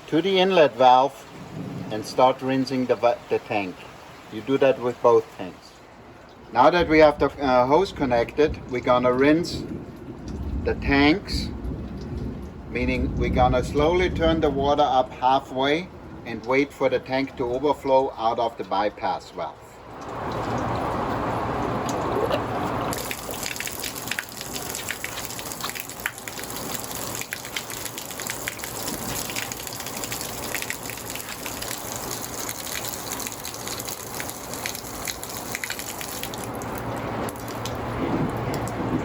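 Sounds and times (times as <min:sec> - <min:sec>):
water gushing from hose: 0:19.8 - 0:39.0.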